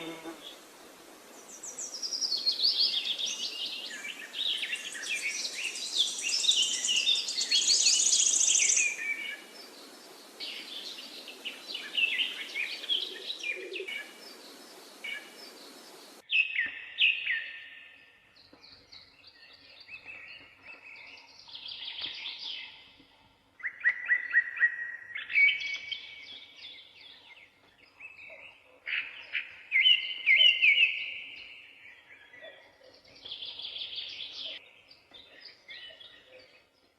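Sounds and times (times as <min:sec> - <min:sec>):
steady hiss: 0:00.0 - 0:06.1, 0:06.9 - 0:16.2
small birds chirping: 0:01.2 - 0:36.9.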